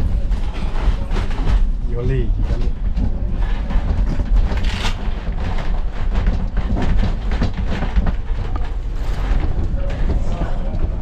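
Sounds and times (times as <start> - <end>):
train rumbling on track: 0.0 - 11.0
train wheels clattering: 0.0 - 11.0.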